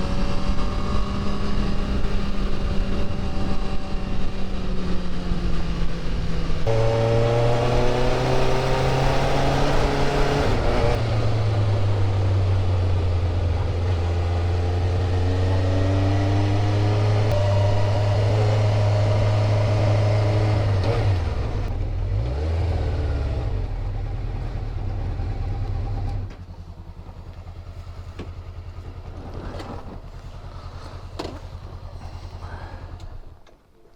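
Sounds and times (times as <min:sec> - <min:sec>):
motorcycle engine running: 0:00.0 - 0:33.5.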